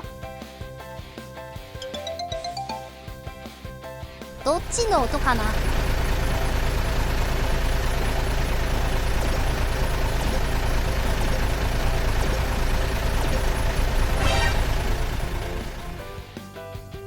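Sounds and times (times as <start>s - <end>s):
diesel truck engine running: 4.4s - 16.3s.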